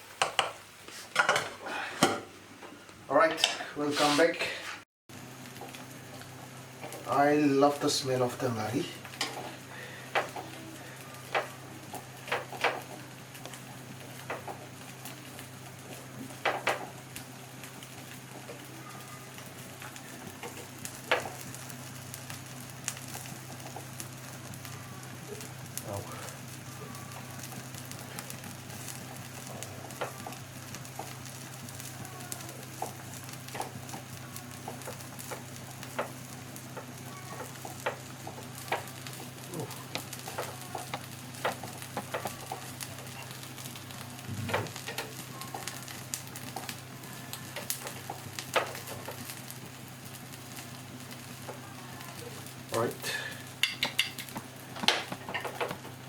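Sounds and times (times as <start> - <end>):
food sizzling and crackling: 0.0 - 56.0
utensils clinking: 53.6 - 55.8.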